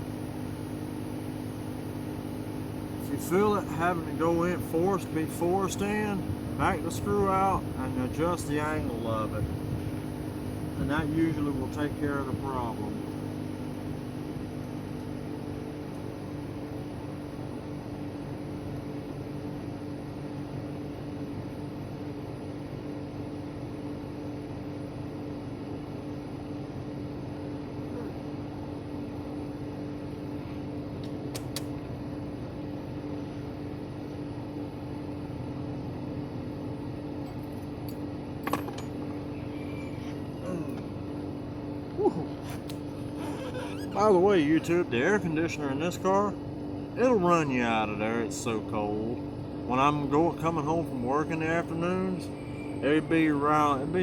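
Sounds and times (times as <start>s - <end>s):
car engine idling: 0.0s - 18.0s
car air conditioning blower: 0.0s - 54.0s
small clicks: 31.0s - 31.8s.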